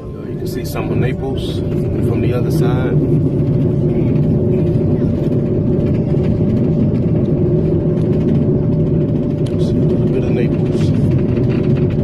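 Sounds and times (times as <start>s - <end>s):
train rumble inside carriage: 0.0s - 12.0s.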